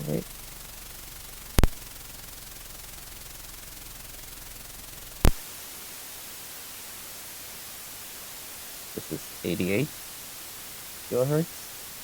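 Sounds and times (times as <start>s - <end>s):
fast fine ticking: 0.0s - 5.5s
steady electronic hiss: 0.0s - 12.0s
sharp pop: 1.5s - 1.8s, 5.2s - 5.5s.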